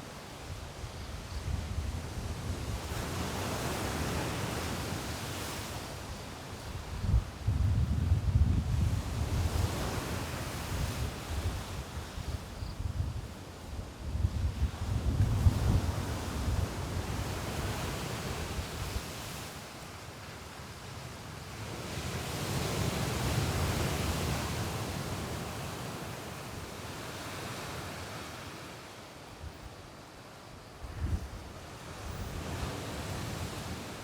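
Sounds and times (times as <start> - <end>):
wind buffeting microphone: 6.8 - 13.3, 13.9 - 19.0, 30.9 - 33.5.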